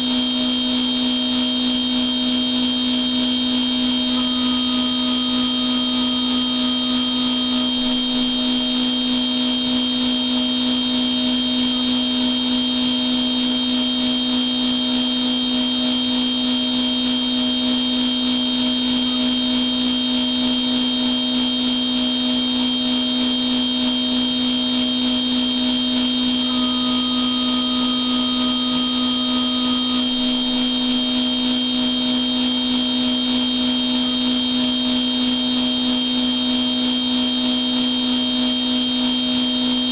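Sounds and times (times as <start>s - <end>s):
machine low hum: 0.0s - 39.9s
spindle high whine: 0.0s - 39.9s
short extra tone: 4.0s - 8.4s.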